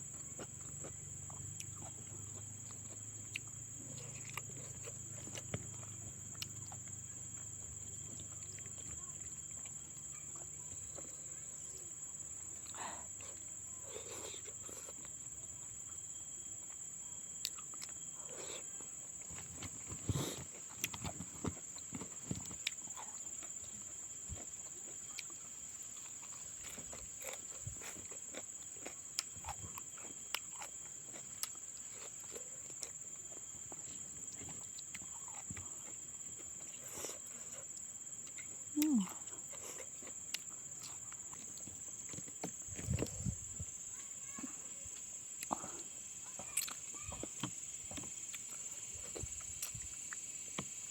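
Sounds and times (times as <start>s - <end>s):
crickets droning: 0.0s - 50.9s
wet eating clicks and crunches: 17.4s - 18.0s, 19.2s - 43.2s, 46.4s - 50.9s.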